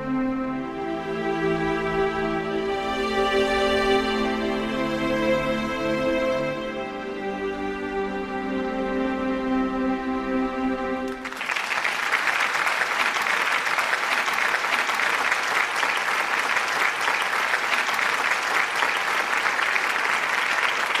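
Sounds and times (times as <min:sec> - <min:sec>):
music with held notes: 0:00.0 - 0:11.2
crowd applauding: 0:11.1 - 0:21.0.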